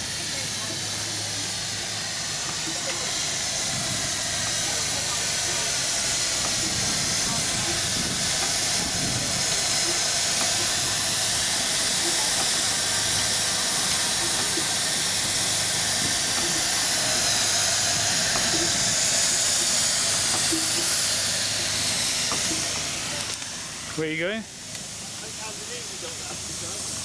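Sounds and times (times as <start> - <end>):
steam hissing: 0.0 - 27.0.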